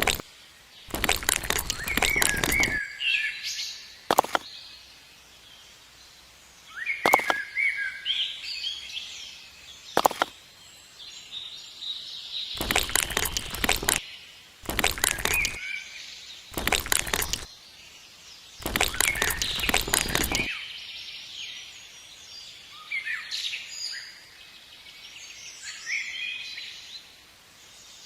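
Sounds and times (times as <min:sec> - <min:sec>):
small birds chirping: 0:00.0 - 0:26.8.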